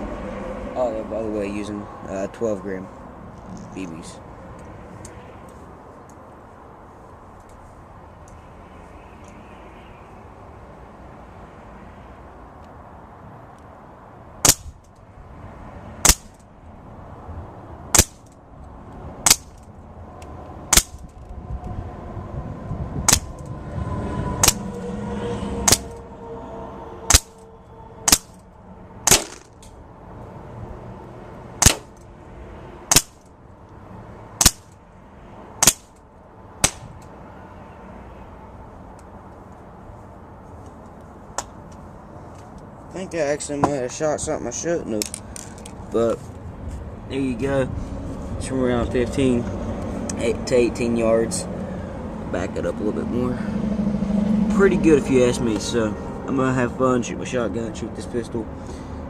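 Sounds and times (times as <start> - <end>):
airsoft pistol shots: 29.1 - 29.4, 31.6 - 31.9.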